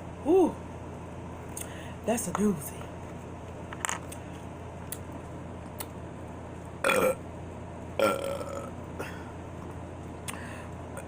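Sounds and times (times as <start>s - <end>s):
woman burping: 6.8s - 7.2s, 8.0s - 9.3s.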